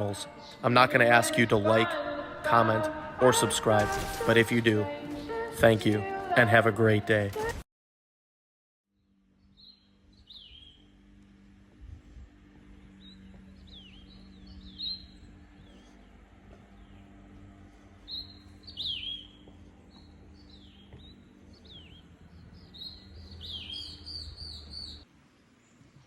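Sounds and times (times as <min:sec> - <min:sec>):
songbirds chirping: 0:00.0 - 0:07.3, 0:09.0 - 0:26.0
low steady hum: 0:09.0 - 0:26.0.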